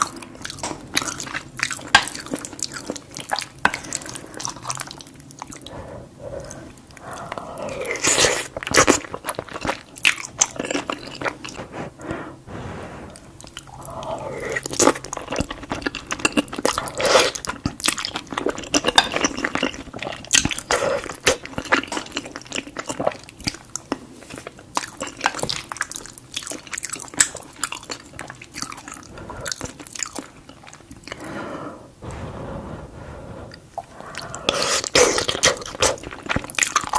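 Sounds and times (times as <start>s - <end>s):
person chewing food: 0.0s - 36.9s.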